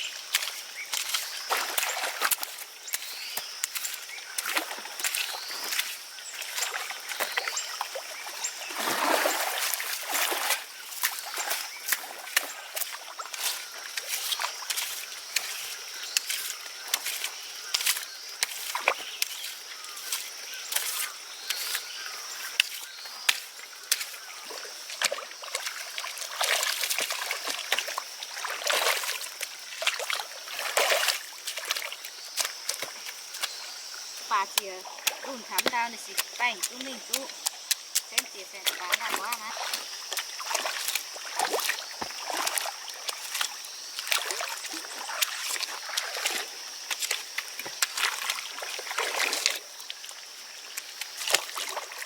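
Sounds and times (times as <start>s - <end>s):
water splashing in muddy pond: 0.0s - 52.0s.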